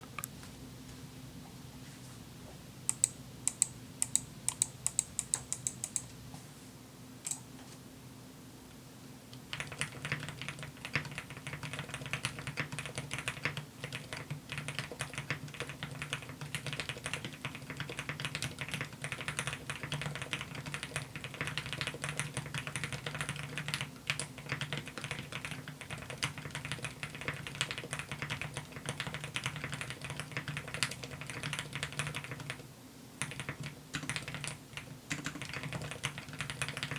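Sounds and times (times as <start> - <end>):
muted keyboard typing: 2.9 - 6.1, 9.5 - 32.6, 33.2 - 36.9
sharp high clicks: 2.9 - 6.1.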